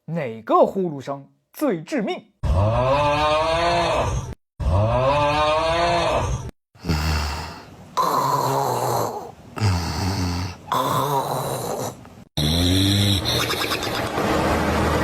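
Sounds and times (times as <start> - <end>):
person snoring: 2.4 - 13.6.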